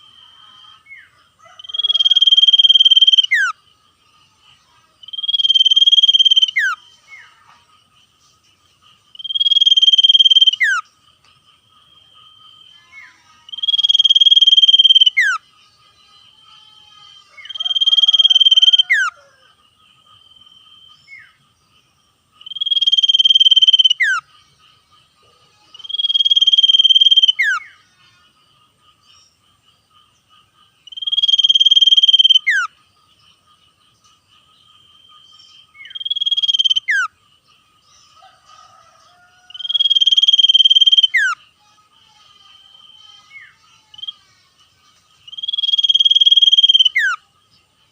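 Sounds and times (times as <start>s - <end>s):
faint steady high tone: 0.0s - 47.9s
bird trilling call: 0.6s - 3.6s, 5.0s - 7.3s, 9.2s - 10.8s, 12.7s - 15.4s, 17.3s - 19.4s, 22.4s - 24.3s, 25.6s - 27.8s, 30.8s - 32.8s, 35.7s - 37.2s, 39.5s - 41.4s, 45.3s - 47.3s.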